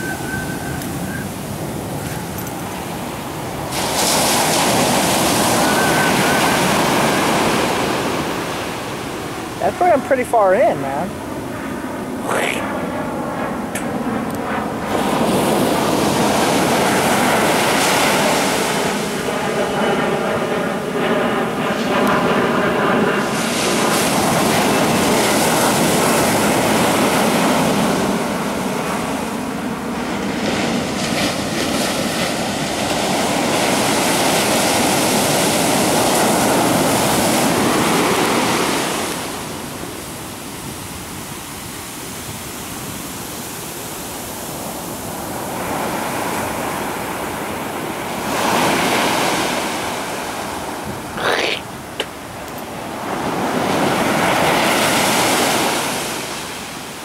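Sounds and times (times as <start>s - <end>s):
ocean waves breaking: 0.0s - 57.0s
engine drone: 12.0s - 17.3s.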